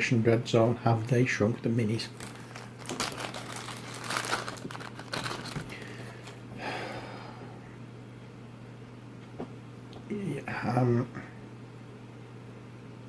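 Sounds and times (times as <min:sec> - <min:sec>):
steady low hum: 0:00.0 - 0:13.0
plastic packaging crinkling: 0:01.8 - 0:06.4.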